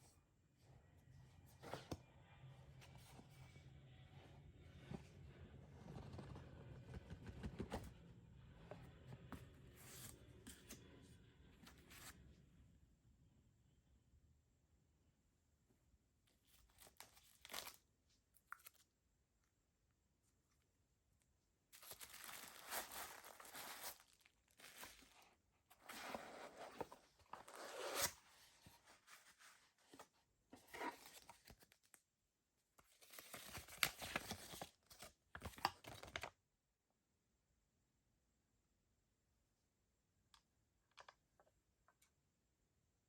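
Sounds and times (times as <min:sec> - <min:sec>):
packaging tearing and crinkling: 0:21.8 - 0:25.0.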